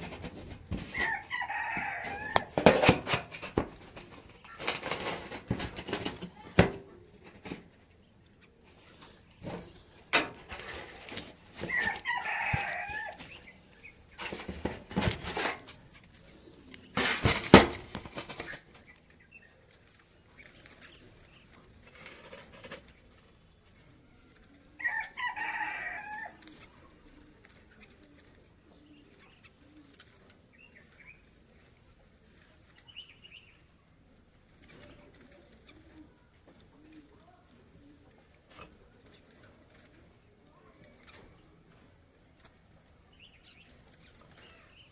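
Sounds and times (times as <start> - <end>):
bird wings flapping in net: 0.0 - 7.7, 16.9 - 18.9
rooster crowing: 0.8 - 2.9, 11.6 - 13.3, 24.8 - 26.4.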